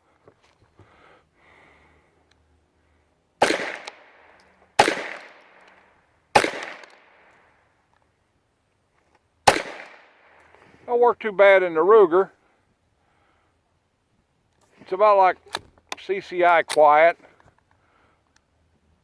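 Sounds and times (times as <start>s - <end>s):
rifle shots with ringing tail: 3.4s - 5.7s, 6.3s - 7.3s, 9.5s - 10.4s.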